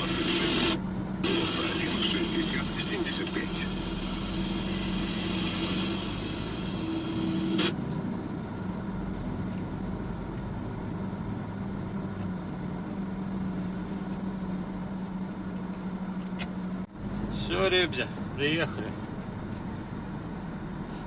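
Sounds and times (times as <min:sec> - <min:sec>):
high tone and hiss: 0:00.0 - 0:09.2
truck engine humming: 0:00.0 - 0:21.0.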